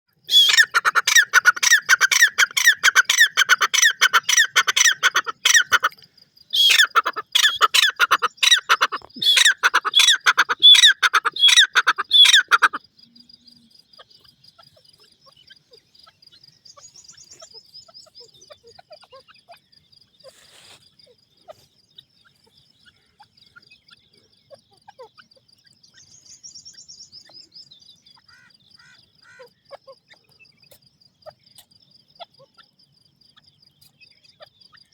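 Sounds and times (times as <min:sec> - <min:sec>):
game bird calling: 0:00.3 - 0:05.9, 0:06.6 - 0:12.8
faint chirps: 0:04.4 - 0:34.9.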